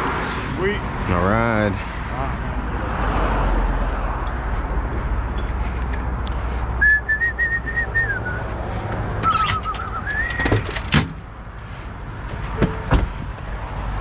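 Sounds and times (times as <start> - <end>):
person whistling: 6.8 - 8.5, 9.3 - 10.5.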